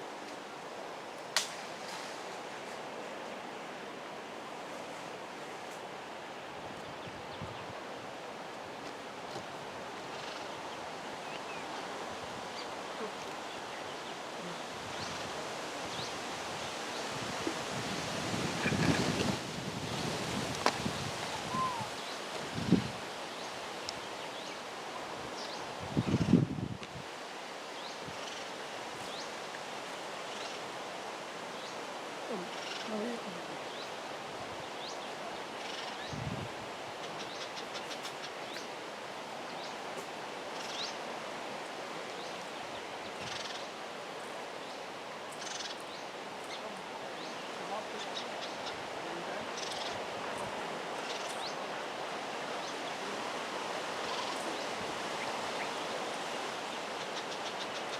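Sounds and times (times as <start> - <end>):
wind-like rustling hiss: 0.0 - 57.9
low wavering call: 21.3 - 21.9.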